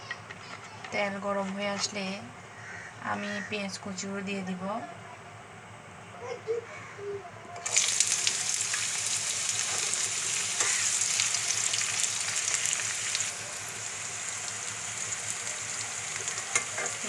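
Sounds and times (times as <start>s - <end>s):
onion sizzling in oil: 7.6s - 17.0s.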